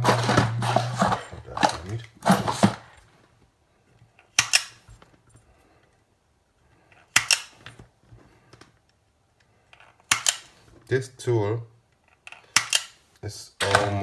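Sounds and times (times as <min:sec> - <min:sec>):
handling noise: 0:00.0 - 0:03.5
sharp snapping clicks: 0:04.4 - 0:04.8, 0:07.1 - 0:07.6, 0:10.1 - 0:10.6, 0:12.5 - 0:13.0.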